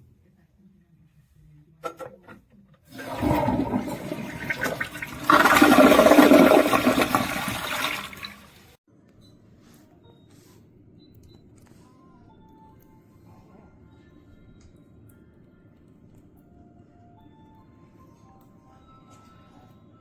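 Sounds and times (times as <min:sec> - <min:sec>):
water rushing: 0:02.9 - 0:08.6.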